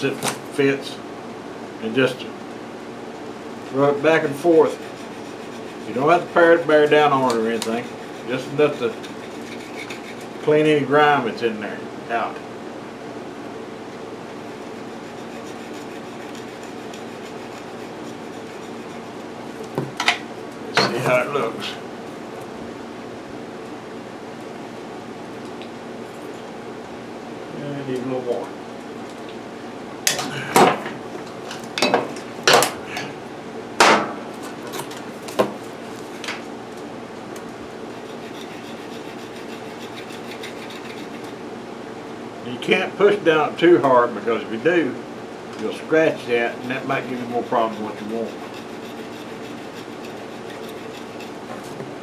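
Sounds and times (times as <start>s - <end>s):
steady hum: 0.0s - 52.0s
faint scratching: 3.6s - 10.5s, 14.4s - 19.7s, 37.9s - 41.4s, 46.5s - 51.8s
tools knocking and clattering: 19.6s - 21.5s, 30.1s - 33.1s, 33.8s - 35.6s.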